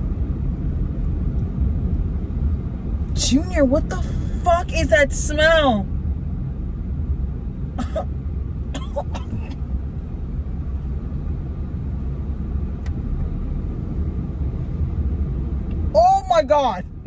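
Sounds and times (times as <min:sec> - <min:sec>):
car road and engine rumble: 0:00.0 - 0:17.0
person coughing: 0:07.8 - 0:08.1, 0:08.8 - 0:09.6.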